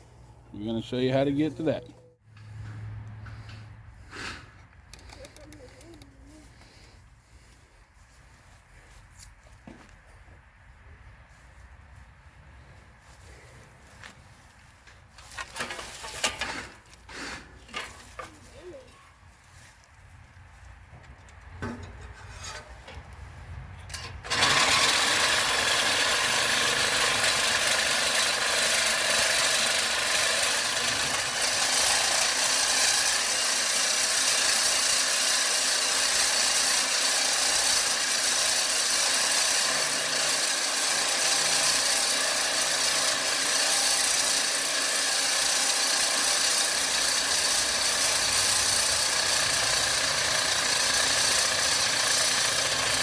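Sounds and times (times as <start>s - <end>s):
power tool running loudly: 23.9s - 53.0s.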